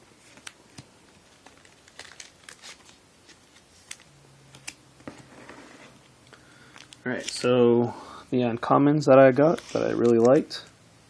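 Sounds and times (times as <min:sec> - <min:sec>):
trading cards rustling into sleeves: 0:00.2 - 0:07.5, 0:09.4 - 0:10.7.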